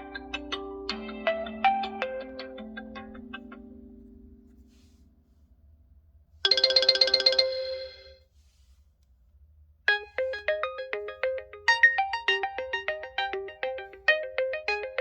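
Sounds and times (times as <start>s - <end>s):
phone ringtone: 6.4s - 8.2s
ringtone melody of short notes: 6.5s - 8.2s.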